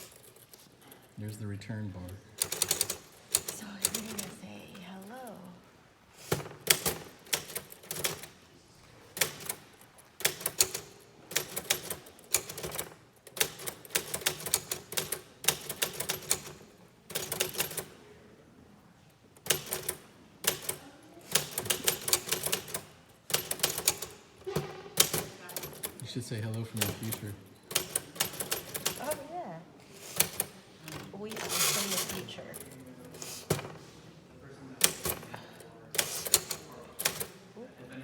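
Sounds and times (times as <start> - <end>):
typewriter keys clacking: 2.4 - 4.4, 6.3 - 8.4, 9.2 - 17.9, 19.4 - 26.0, 26.6 - 29.3, 30.0 - 33.8, 36.0 - 37.3.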